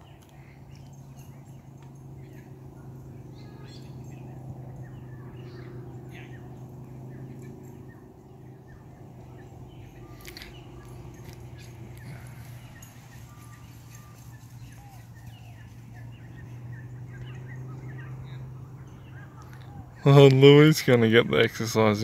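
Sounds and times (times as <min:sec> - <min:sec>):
steady low hum: 0:00.0 - 0:20.0
birds chirping: 0:00.0 - 0:22.0.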